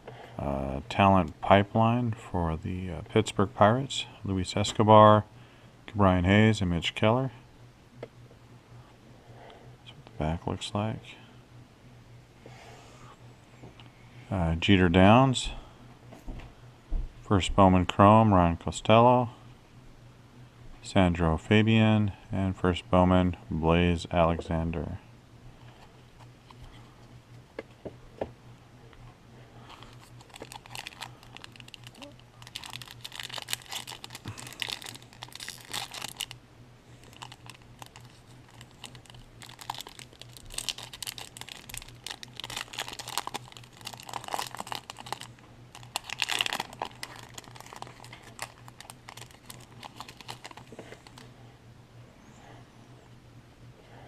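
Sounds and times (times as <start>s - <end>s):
steady low hum: 0.0s - 54.0s
foil wrapper crinkling and tearing: 29.7s - 51.3s.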